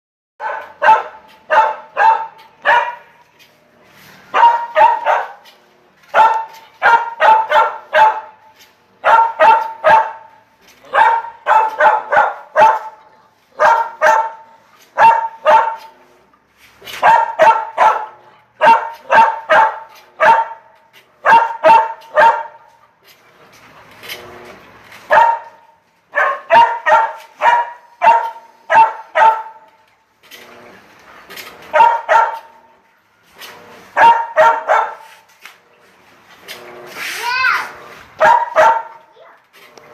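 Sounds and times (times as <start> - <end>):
dog barking: 0.4 - 3.2, 4.3 - 5.4, 6.1 - 8.4, 9.0 - 13.0, 13.6 - 15.9, 17.0 - 22.7, 25.1 - 29.7, 31.7 - 32.6, 34.0 - 35.2, 38.2 - 39.0.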